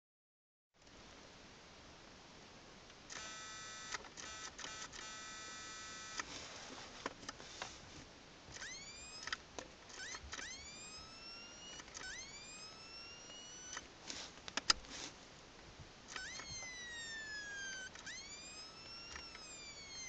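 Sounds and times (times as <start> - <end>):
clicks: 8.5 - 14.9, 16.1 - 20.0.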